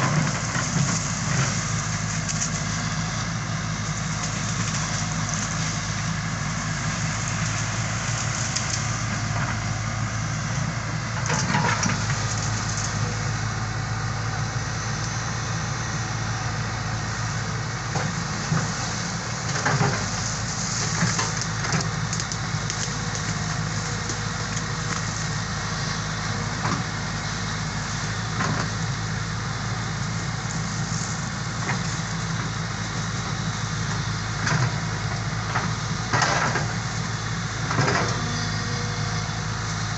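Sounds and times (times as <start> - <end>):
excavator diesel engine running: 0.0 - 39.9
vegetation crackling and snapping: 0.1 - 2.9, 3.6 - 9.6, 11.2 - 13.0, 19.4 - 27.0.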